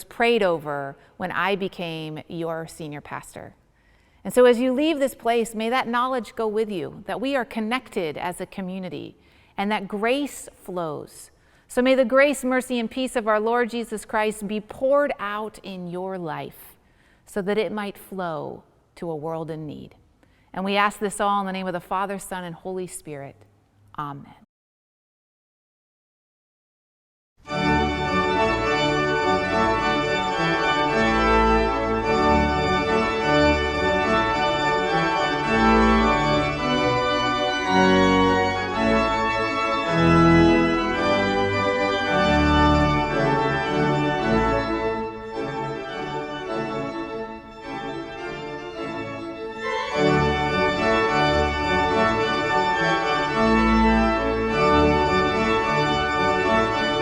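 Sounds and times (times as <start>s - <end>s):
full organ chords: 27.4s - 57.0s.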